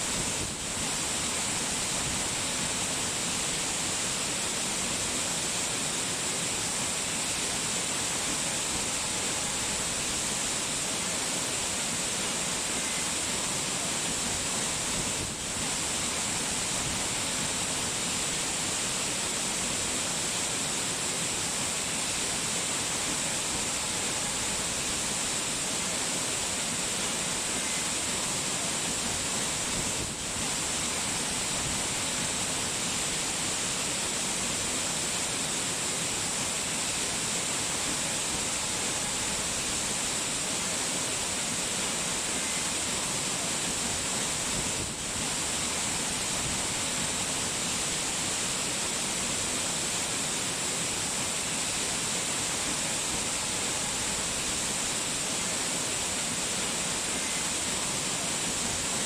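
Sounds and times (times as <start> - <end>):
rush of falling water: 0.0 - 59.0.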